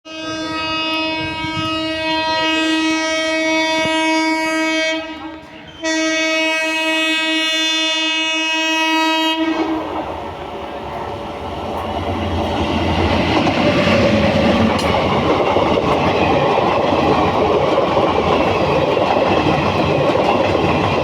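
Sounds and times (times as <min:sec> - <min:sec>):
locomotive horn blasts: 0:00.1 - 0:09.7.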